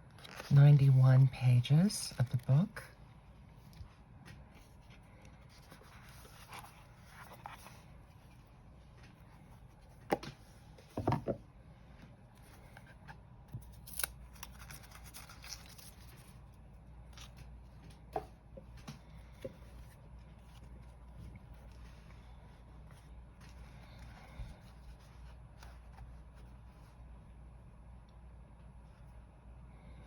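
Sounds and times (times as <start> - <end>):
paper rustling: 4.2 - 10.4, 12.4 - 27.0.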